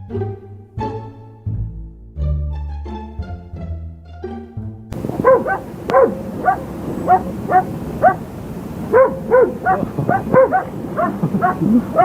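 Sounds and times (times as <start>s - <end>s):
dog yipping: 5.0s - 12.0s.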